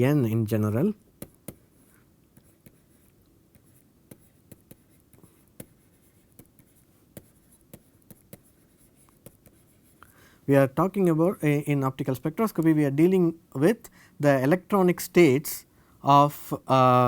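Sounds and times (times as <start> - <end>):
pen writing taps and scratches: 1.2 - 10.0.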